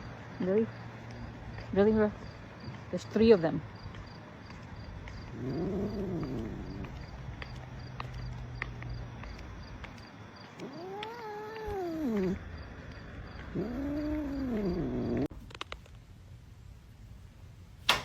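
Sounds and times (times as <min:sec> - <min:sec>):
cat yowling: 0:05.3 - 0:07.0, 0:10.6 - 0:12.4, 0:13.5 - 0:15.3.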